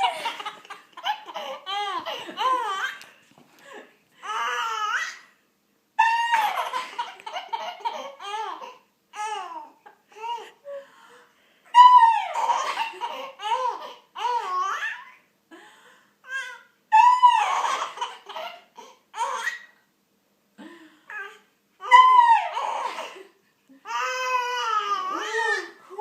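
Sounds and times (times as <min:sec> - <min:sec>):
baby laughing: 0:00.0 - 0:03.0, 0:06.0 - 0:10.4, 0:12.1 - 0:15.2, 0:17.2 - 0:19.7.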